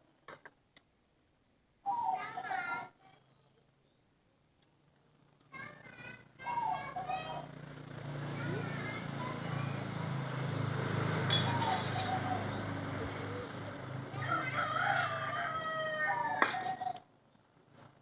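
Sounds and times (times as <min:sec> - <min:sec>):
rooster crowing: 0:14.1 - 0:16.9.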